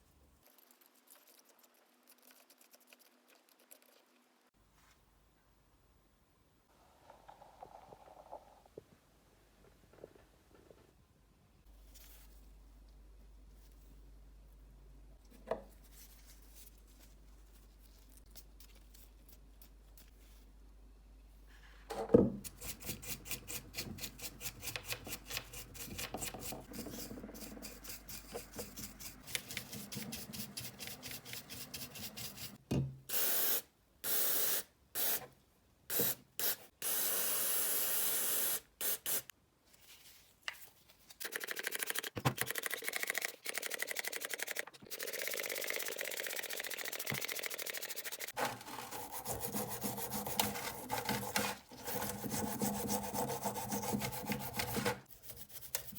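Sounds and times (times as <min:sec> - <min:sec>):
short hiss bursts: 0:36.0 - 0:39.3
hand sanding or filing strokes: 0:47.9 - 0:55.9
continuous scraping: 0:48.3 - 0:55.9.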